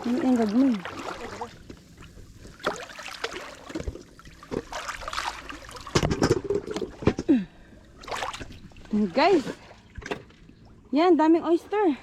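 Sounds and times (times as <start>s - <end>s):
knocks and clatters: 5.9s - 7.3s.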